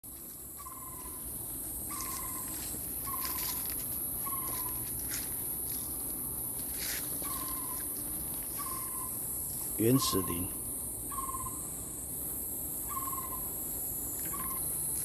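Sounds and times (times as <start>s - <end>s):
insects droning: 0.1s - 15.0s
brushing or crunching noises: 6.6s - 7.6s.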